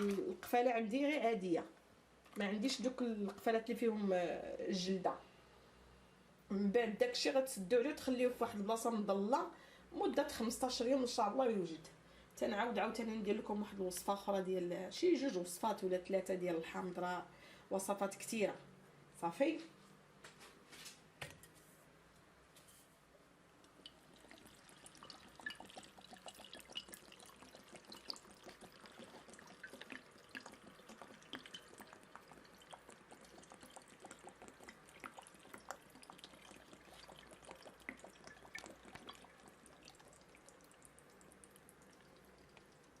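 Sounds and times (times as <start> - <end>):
small water clicks: 0.0 - 0.5, 23.6 - 43.0
water dripping: 0.0 - 0.6, 23.6 - 43.0.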